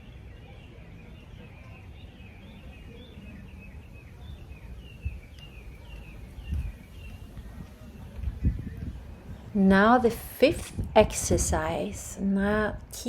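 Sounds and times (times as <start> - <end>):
small birds chirping: 0.0 - 9.6.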